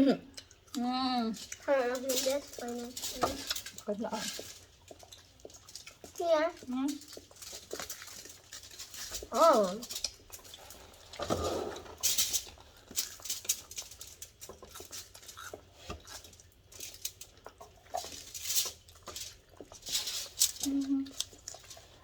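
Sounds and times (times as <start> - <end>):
chewing and lip smacking: 0.2 - 22.0.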